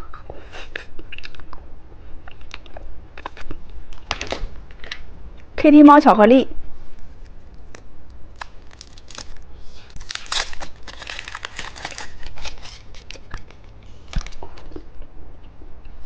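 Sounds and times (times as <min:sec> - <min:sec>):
plastic wrapper crinkling and tearing: 0:07.2 - 0:14.8.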